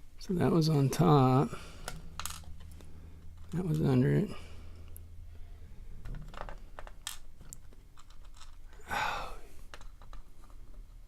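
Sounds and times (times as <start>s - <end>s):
lock parts clicking and scratching: 6.0s - 8.9s, 9.5s - 11.0s.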